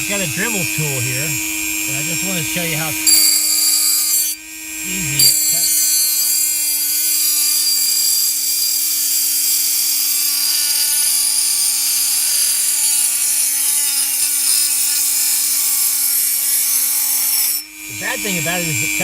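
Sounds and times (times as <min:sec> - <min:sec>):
cutting wheel hissing: 0:00.0 - 0:19.0
rotary tool motor whine: 0:00.0 - 0:19.0.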